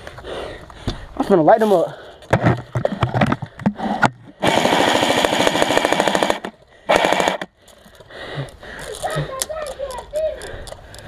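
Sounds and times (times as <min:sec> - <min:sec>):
airsoft gun firing full auto: 0:04.4 - 0:07.5.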